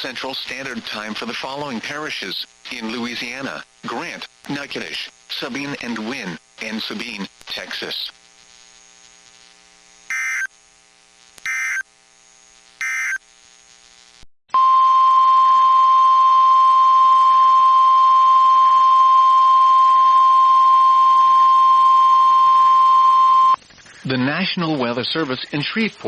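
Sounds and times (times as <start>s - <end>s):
screeching digital data bursts: 10.1s - 10.5s, 11.4s - 11.8s, 12.8s - 13.3s
steady warning alarm tone: 10.1s - 10.5s, 11.5s - 11.8s, 12.8s - 13.2s.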